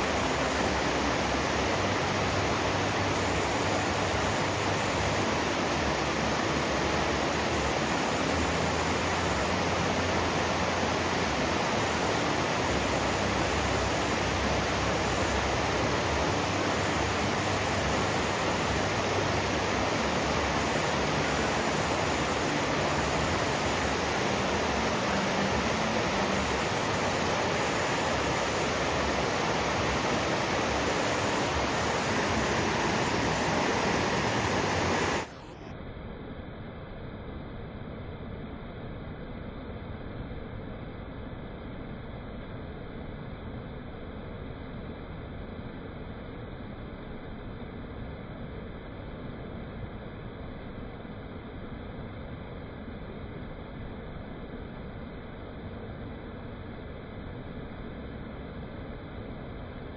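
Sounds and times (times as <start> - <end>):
river water rushing: 0.0 - 35.4.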